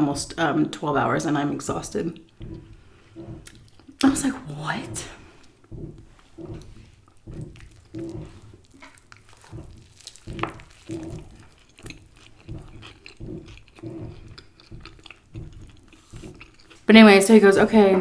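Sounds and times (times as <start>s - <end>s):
person chewing food: 1.7s - 16.9s
small mouth clicks: 4.9s - 16.9s.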